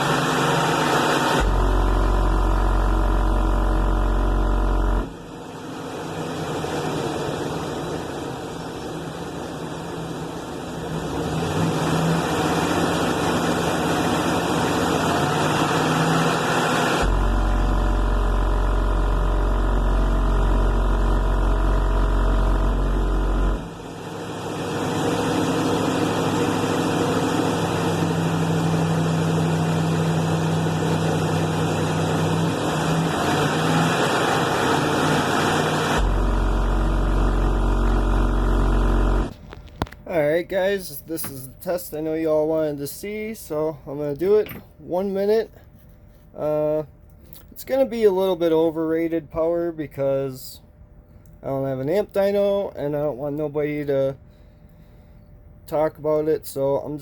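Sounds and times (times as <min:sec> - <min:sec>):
overdriven rattly bass: 0:00.0 - 0:08.0, 0:12.8 - 0:45.3
very deep bass tones: 0:01.3 - 0:05.4, 0:17.0 - 0:23.9, 0:35.3 - 0:39.4.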